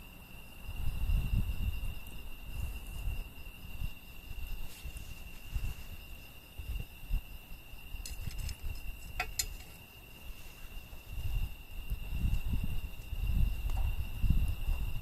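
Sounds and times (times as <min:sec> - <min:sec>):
cricket trilling: 0:00.0 - 0:15.0
wind rumble on microphone: 0:00.0 - 0:15.0
firewood crackling: 0:02.1 - 0:13.2.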